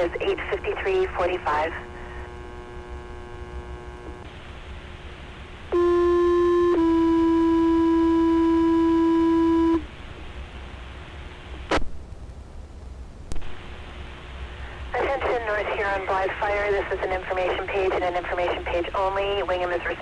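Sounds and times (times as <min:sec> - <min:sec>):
low radio hiss: 0:00.0 - 0:20.0
two-tone pager alert over radio: 0:05.8 - 0:09.8.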